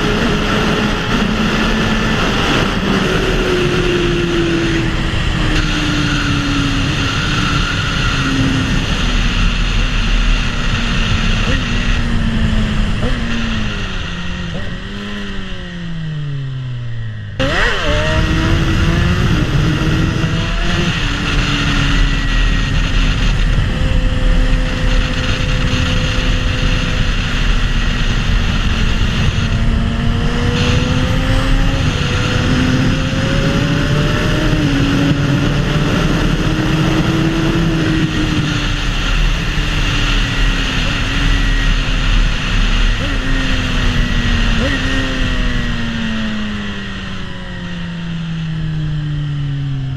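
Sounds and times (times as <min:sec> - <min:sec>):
motorcycle engine: 0:00.0 - 0:49.9.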